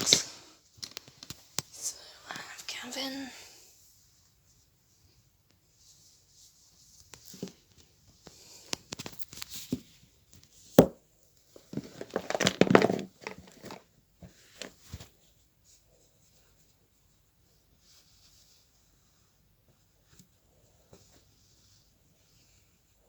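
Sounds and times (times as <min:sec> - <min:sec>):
plastic packaging crinkling: 0:11.8 - 0:13.9.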